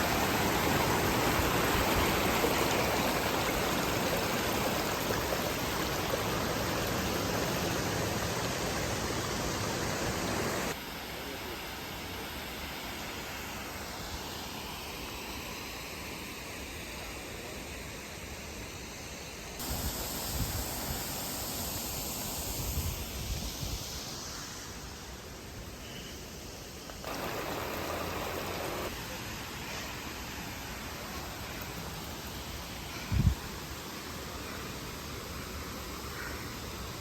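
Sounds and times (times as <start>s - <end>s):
waterfall rushing: 0.0s - 10.8s, 27.0s - 33.1s.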